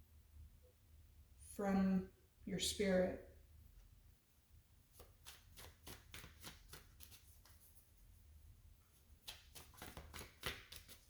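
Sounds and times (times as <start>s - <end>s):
cards being shuffled: 4.9s - 7.9s, 9.2s - 11.0s.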